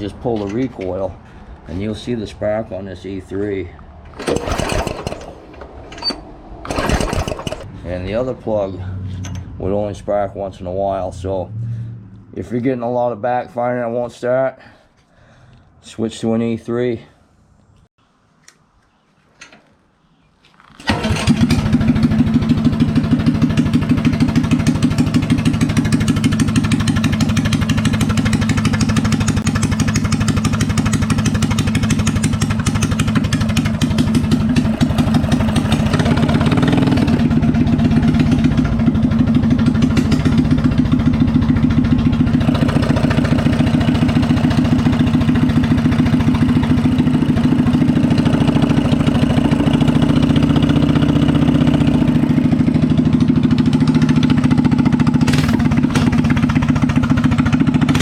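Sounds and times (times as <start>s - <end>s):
small engine starting and idling: 4.1s - 7.7s, 20.7s - 58.0s.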